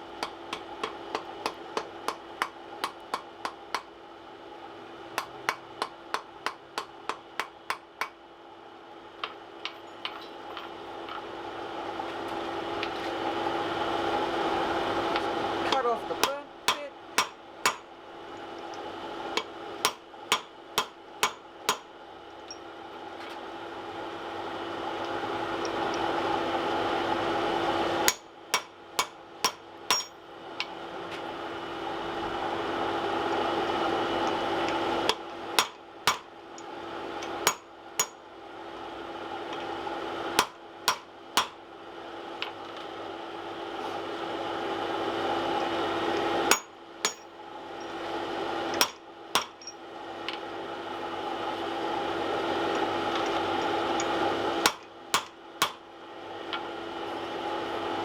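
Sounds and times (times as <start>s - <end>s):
steady roar with low hum: 0.0s - 58.0s
hammer striking steel on anvil: 16.2s - 17.9s, 19.8s - 21.9s, 28.1s - 30.2s, 35.6s - 36.3s, 37.4s - 38.2s, 40.4s - 41.6s, 46.5s - 47.3s, 48.8s - 49.8s, 53.2s - 55.8s.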